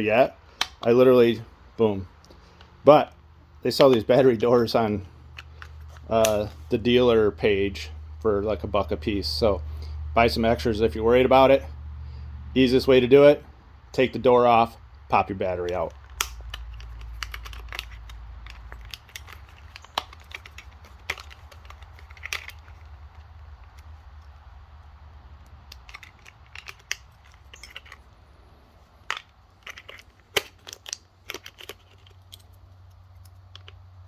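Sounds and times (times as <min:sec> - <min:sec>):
plastic battery door clicks and snaps: 0:00.5 - 0:00.9, 0:15.6 - 0:22.8.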